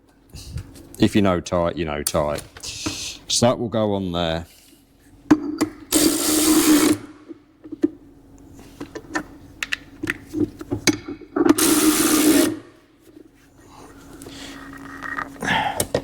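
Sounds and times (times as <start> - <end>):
cordless power tool whirring: 11.6 - 12.6.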